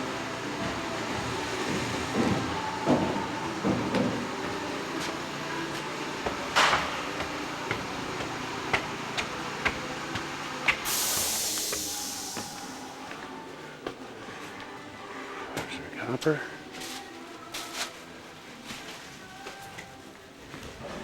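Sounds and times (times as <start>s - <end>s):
hissing burst: 10.8s - 13.0s.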